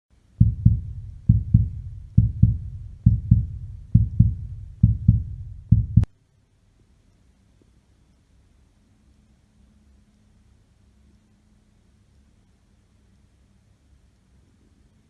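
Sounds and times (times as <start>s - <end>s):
heartbeat thumps: 0.4s - 6.1s.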